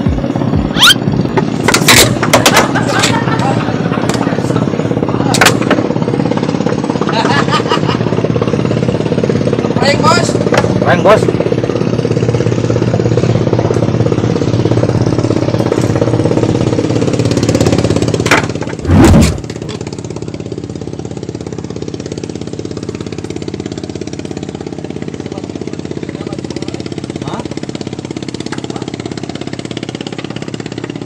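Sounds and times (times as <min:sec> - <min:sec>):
small engine running: 0:00.0 - 0:31.0.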